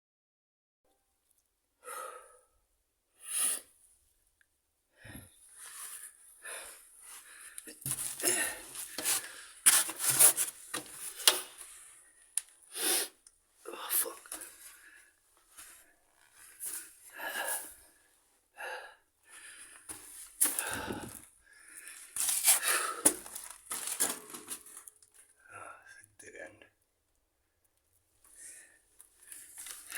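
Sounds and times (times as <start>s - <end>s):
person breathing heavily: 5.0s - 9.7s, 16.6s - 17.8s, 18.6s - 23.3s.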